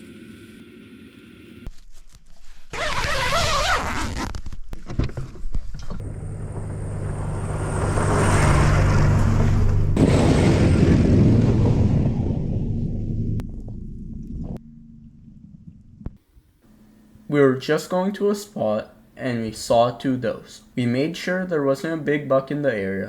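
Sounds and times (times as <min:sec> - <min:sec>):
road and wind rush: 0:05.8 - 0:14.6
vehicle engine droning: 0:05.8 - 0:16.2.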